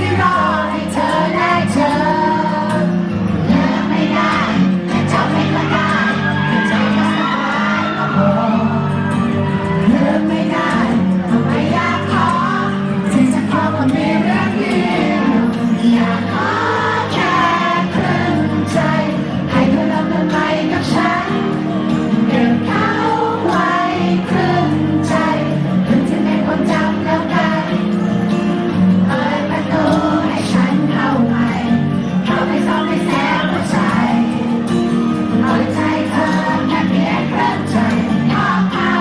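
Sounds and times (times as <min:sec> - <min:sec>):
person singing: 0:00.0 - 0:27.9.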